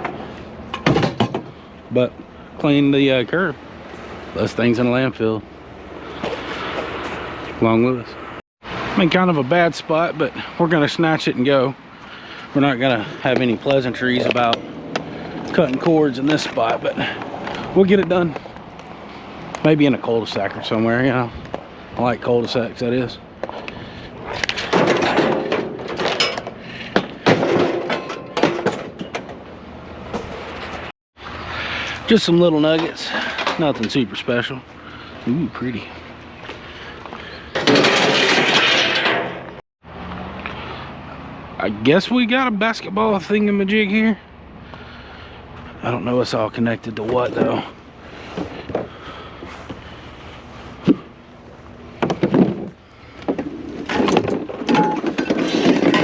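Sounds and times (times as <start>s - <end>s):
scrap metal clanking: 24.3s - 29.5s, 37.2s - 39.6s, 52.0s - 56.0s
metal parts knocking and rattling: 24.5s - 29.5s, 37.5s - 39.6s, 53.3s - 56.0s.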